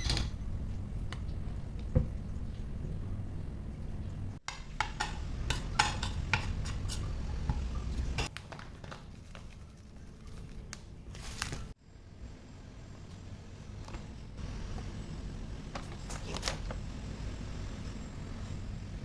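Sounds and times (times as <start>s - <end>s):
kitchenware clinking and clattering: 4.5s - 8.9s.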